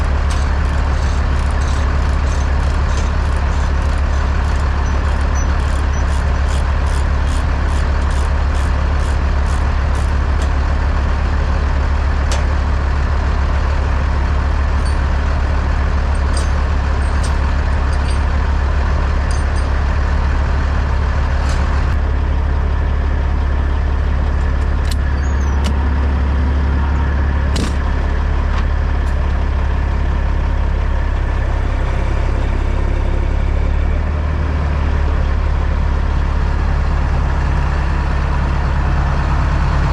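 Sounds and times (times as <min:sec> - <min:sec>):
truck engine droning: 0:00.0 - 0:39.9
regular ticking: 0:14.7 - 0:19.9.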